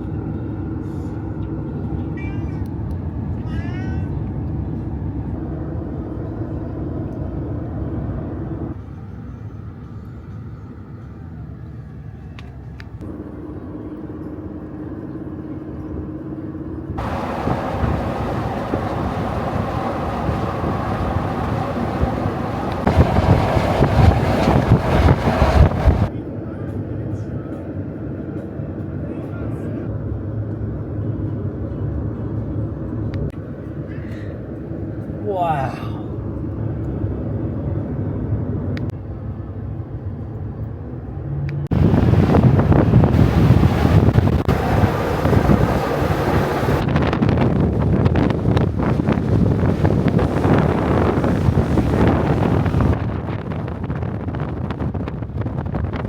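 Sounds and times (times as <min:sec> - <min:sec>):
wind and road noise: 0:00.0 - 0:56.0
vehicle engine humming: 0:10.8 - 0:26.1, 0:36.2 - 0:47.0, 0:48.2 - 0:53.0
wind buffeting microphone: 0:16.9 - 0:26.1, 0:41.7 - 0:56.0.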